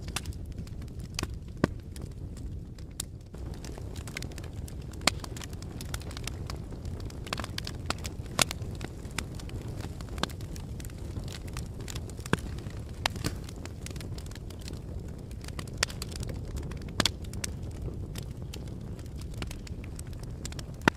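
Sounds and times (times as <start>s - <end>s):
fire crackling and popping: 0.0s - 20.9s
low noise of flames: 0.0s - 20.9s.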